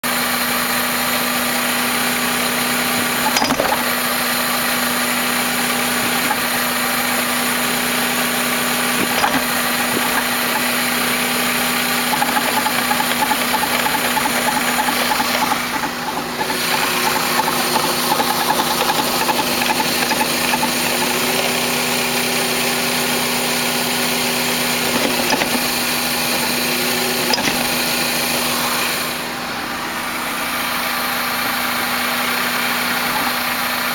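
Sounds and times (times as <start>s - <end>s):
car engine idling: 0.3s - 33.9s
transmission shift clunks: 2.5s - 21.9s, 24.6s - 30.2s.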